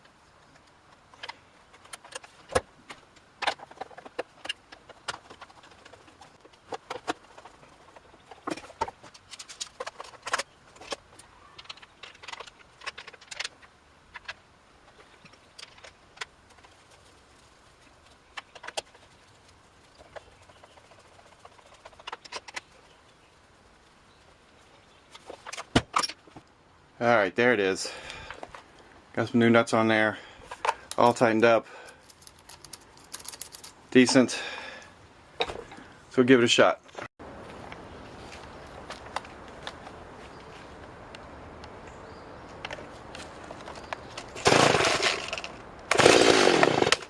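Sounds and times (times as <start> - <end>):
wrench and metal parts clinking: 31.9 - 33.8.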